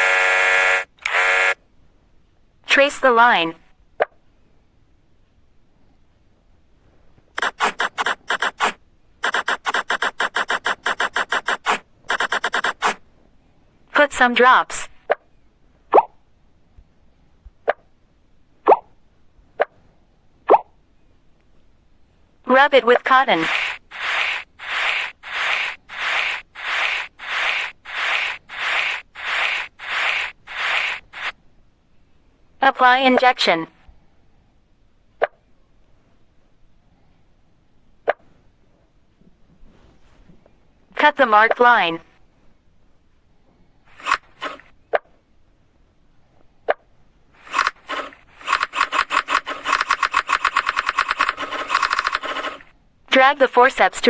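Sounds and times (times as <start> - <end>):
cotton rubbing on scalp: 7.4 - 13.0, 23.3 - 31.3
marker pen scribbling: 7.4 - 13.0, 22.8 - 31.3, 43.9 - 44.7, 47.4 - 52.7.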